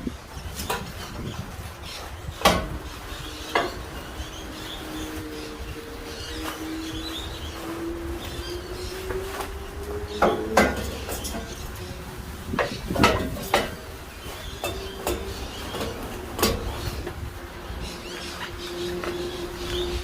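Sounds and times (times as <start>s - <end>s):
sharp knocks and clatters: 12.6s - 13.9s.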